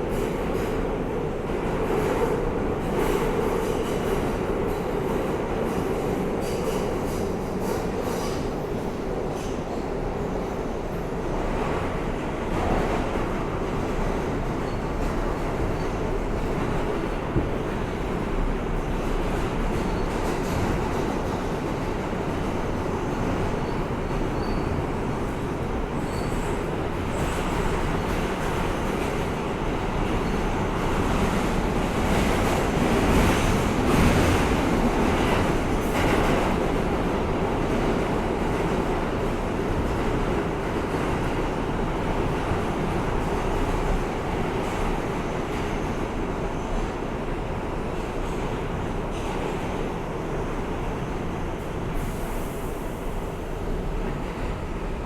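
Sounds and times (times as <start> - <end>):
subway wheels rumbling on rail: 0.0 - 55.0.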